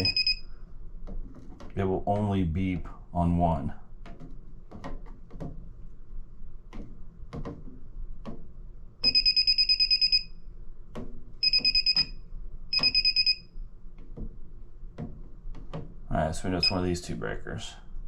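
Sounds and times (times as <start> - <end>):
rapid high-pitched beeping: 0.0 - 0.4, 9.0 - 10.3, 11.4 - 12.1, 12.7 - 13.4.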